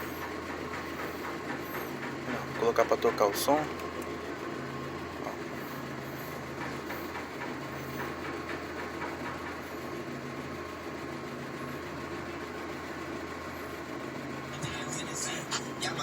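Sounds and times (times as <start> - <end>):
car engine idling: 14.5 - 16.0.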